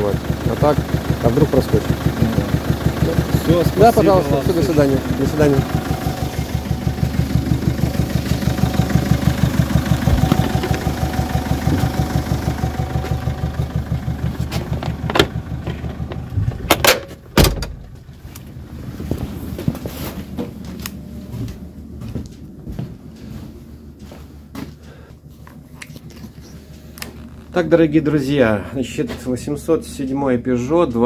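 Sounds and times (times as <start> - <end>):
diesel engine idling with knock: 0.0 - 22.0
heavy thud: 10.0 - 10.9, 14.5 - 18.0.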